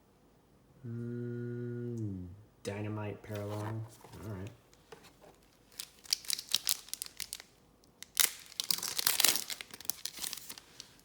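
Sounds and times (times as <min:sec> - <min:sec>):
wrapper crinkling and tearing: 0:05.4 - 0:11.0.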